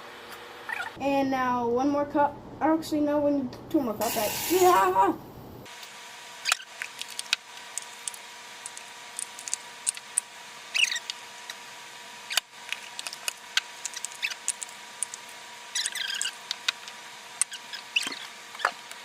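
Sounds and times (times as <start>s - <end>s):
foam clicks and crackles: 6.5s - 11.6s, 12.3s - 19.0s
brief squeaks: 17.5s - 18.8s.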